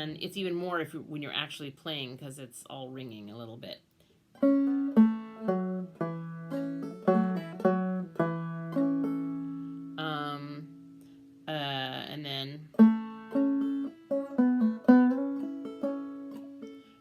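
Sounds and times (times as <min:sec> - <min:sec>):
slow banjo plucking: 0:04.3 - 0:17.0.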